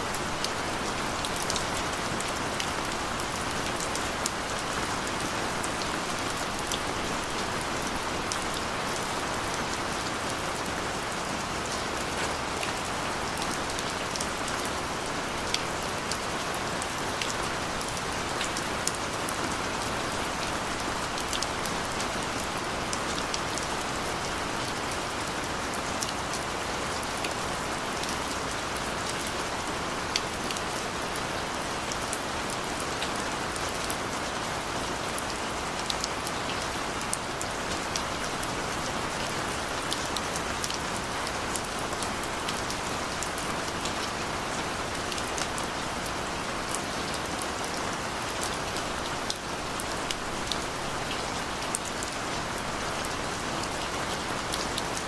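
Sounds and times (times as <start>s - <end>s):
steady rain hiss: 0.0s - 55.0s.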